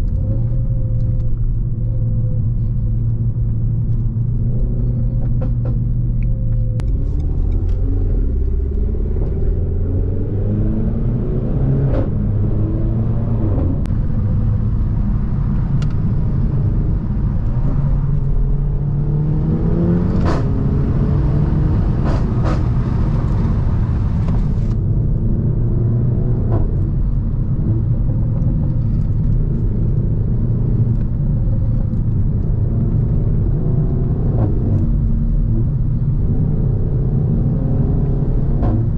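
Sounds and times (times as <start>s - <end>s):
car engine rumbling: 0.0s - 38.9s.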